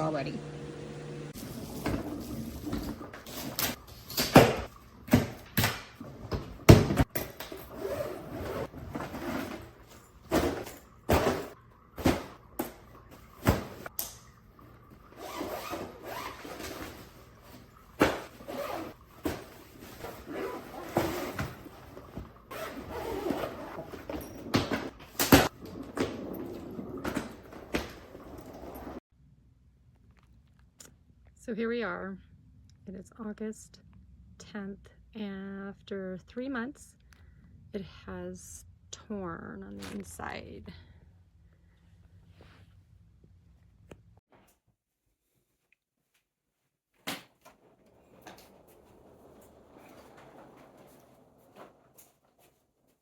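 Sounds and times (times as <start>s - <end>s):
rustling and scraping: 47.0s - 53.0s.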